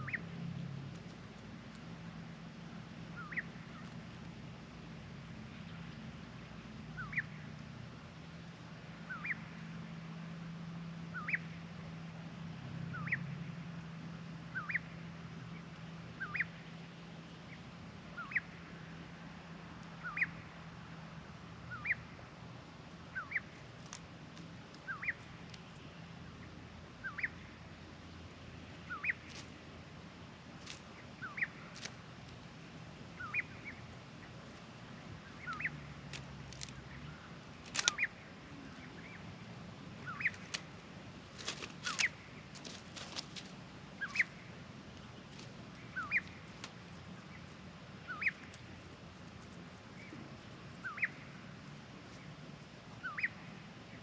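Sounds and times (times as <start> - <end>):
bird chirping: 0.0 - 0.3, 3.1 - 4.0, 7.0 - 7.5, 9.0 - 9.6, 11.1 - 11.6, 12.9 - 13.2, 14.5 - 18.6, 19.9 - 20.5, 21.6 - 22.2, 23.1 - 24.0, 24.7 - 28.2, 28.8 - 29.5, 30.7 - 32.0, 33.1 - 35.9, 36.5 - 40.8, 41.6 - 42.8, 43.9 - 52.3, 52.9 - 54.0
steady low hum: 0.0 - 54.0
sharp clicks: 37.6 - 38.1.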